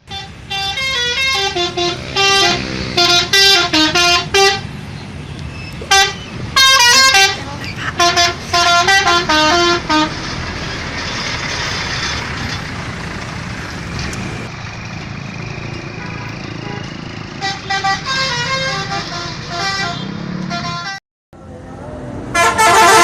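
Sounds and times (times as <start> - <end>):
musical air horns tooting: 0.0 - 4.7, 5.9 - 7.4, 8.0 - 10.4, 16.0 - 21.0, 22.3 - 23.0
vehicle noise: 0.0 - 23.0.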